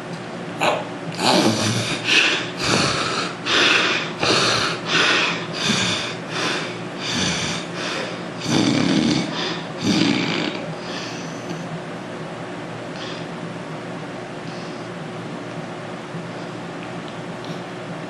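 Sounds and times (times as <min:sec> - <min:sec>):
man snoring: 0:00.6 - 0:11.6.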